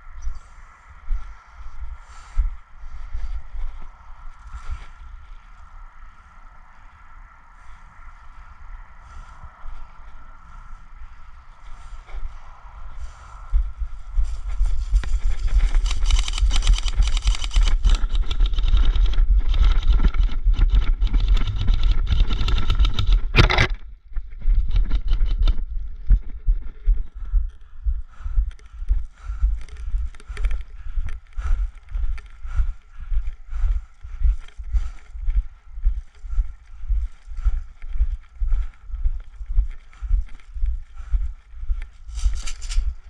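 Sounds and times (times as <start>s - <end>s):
footsteps walking: 9.7s - 43.0s
sharp scrape: 14.3s - 23.7s, 42.1s - 43.0s
clothing and gear rustling: 42.0s - 43.0s.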